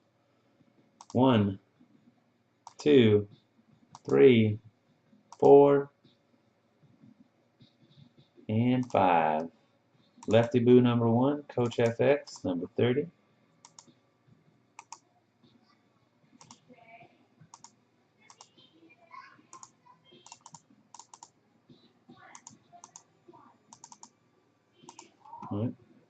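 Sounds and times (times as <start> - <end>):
keyboard typing: 1.0 - 1.4, 2.6 - 3.0, 3.9 - 4.3, 8.8 - 9.4, 10.2 - 10.6, 13.6 - 14.0, 14.8 - 15.0, 16.4 - 16.6, 17.5 - 18.6, 19.5 - 23.1, 23.7 - 24.1, 24.8 - 25.5
mouse clicks: 3.9 - 4.2, 13.6 - 14.0, 14.8 - 15.0, 16.4 - 16.6, 17.5 - 18.5, 19.5 - 21.3, 23.7 - 24.1, 24.8 - 25.5.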